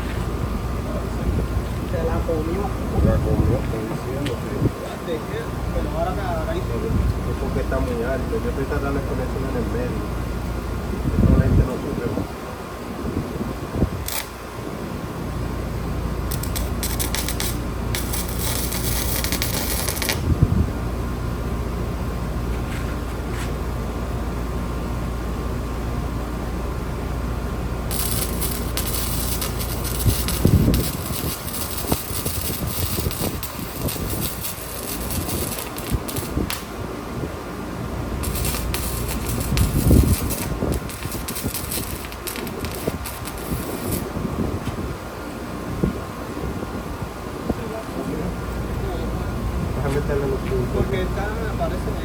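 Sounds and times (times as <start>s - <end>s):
steady low hum: 0.0s - 52.0s
welding arc crackling: 14.0s - 14.6s, 16.2s - 20.4s, 27.8s - 37.0s, 37.8s - 44.2s.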